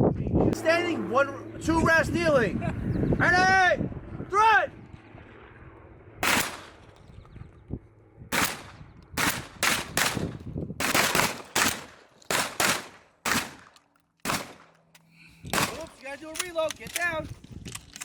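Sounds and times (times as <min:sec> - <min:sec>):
shotgun shots: 0:06.2 - 0:06.9, 0:08.3 - 0:14.7, 0:15.5 - 0:15.9.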